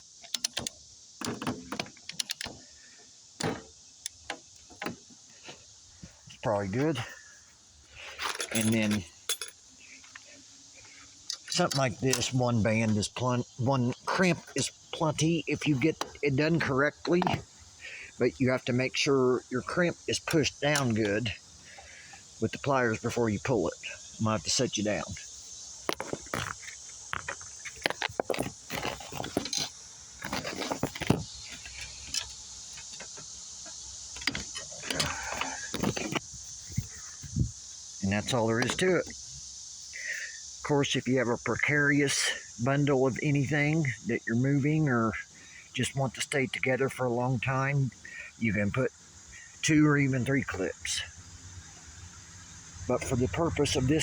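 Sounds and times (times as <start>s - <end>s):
crickets chirring: 0.0s - 54.0s
handling clicks knocks and scrapes: 0.2s - 2.6s, 8.0s - 13.3s, 13.9s - 17.5s, 25.8s - 37.0s, 38.6s - 38.9s
ratcheting tensioner clicks: 0.2s - 2.6s
strap scraping: 25.8s - 33.0s.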